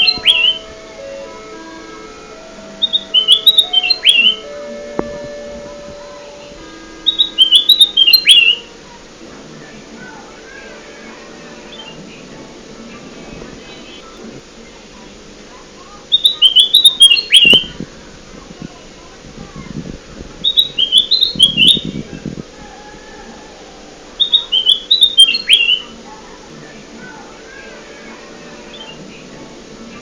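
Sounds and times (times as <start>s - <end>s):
bird singing: 0.0s - 2.0s, 2.7s - 4.6s, 6.1s - 8.7s, 11.4s - 12.4s, 13.4s - 14.8s, 16.1s - 17.8s, 20.4s - 26.0s, 26.7s - 30.0s.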